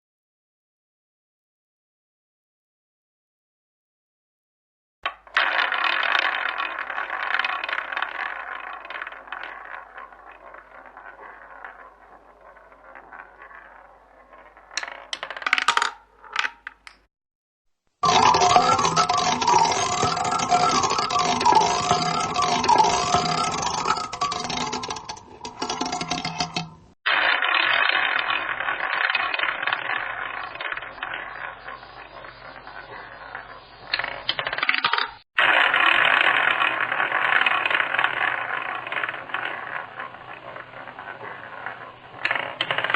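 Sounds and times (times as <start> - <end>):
ball clattering into pocket: 5.1 - 17.1
roulette ball rolling rattle: 5.1 - 17.1, 18.0 - 42.9.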